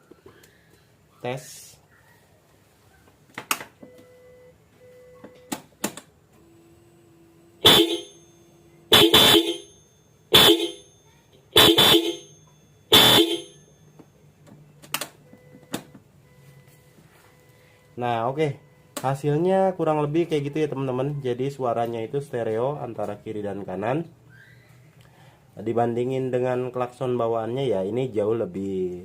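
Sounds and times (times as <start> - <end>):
disc horns honking: 6.4 - 14.0.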